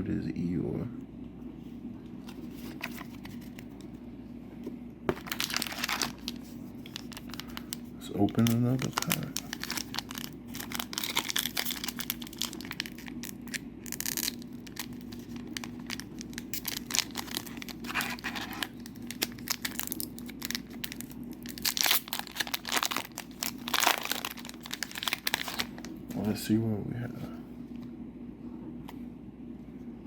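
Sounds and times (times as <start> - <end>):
foil wrapper tearing and crinkling: 5.1 - 25.9.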